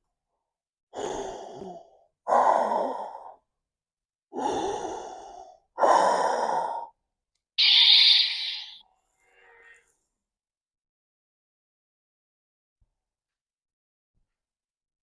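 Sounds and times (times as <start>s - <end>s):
slow heavy breaths: 0.9s - 3.5s, 4.3s - 7.0s.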